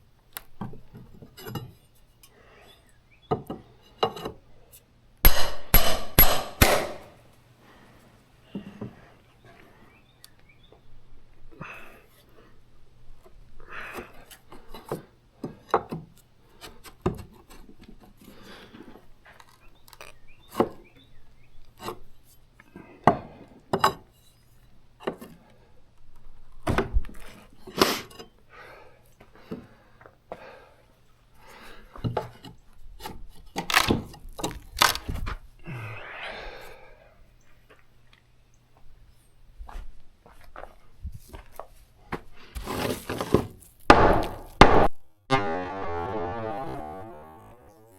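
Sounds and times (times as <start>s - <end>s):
wood scraping: 42.6s - 47.9s.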